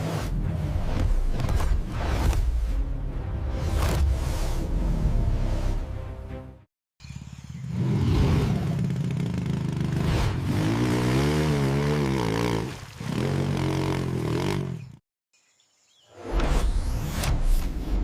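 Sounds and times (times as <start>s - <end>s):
motorcycle engine revving: 7.2s - 15.0s.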